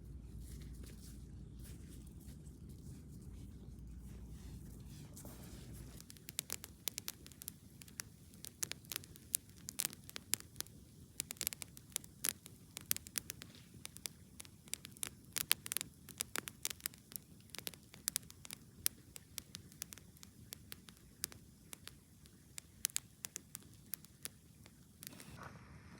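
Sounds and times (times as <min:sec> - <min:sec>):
campfire crackling: 0:05.6 - 0:25.4
sharp fire pops: 0:05.8 - 0:25.4.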